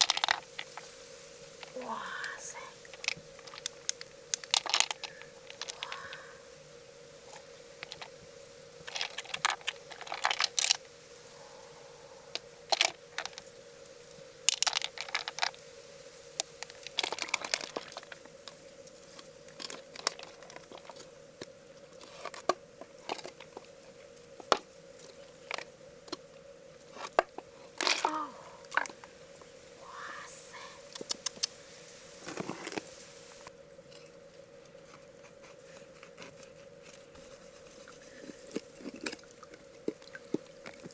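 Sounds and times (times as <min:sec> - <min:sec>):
mussel shells clicking and crunching: 0:00.0 - 0:06.5, 0:07.2 - 0:08.2, 0:08.8 - 0:10.9, 0:12.3 - 0:13.5, 0:14.4 - 0:15.6, 0:16.4 - 0:23.7, 0:24.4 - 0:29.2, 0:30.8 - 0:31.6, 0:35.9 - 0:40.9.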